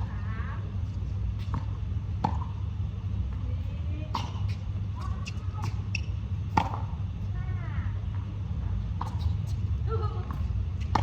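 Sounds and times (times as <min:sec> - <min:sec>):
racket hitting tennis ball: 0:01.4 - 0:02.6, 0:04.1 - 0:05.9, 0:06.5 - 0:07.0, 0:10.2 - 0:11.0.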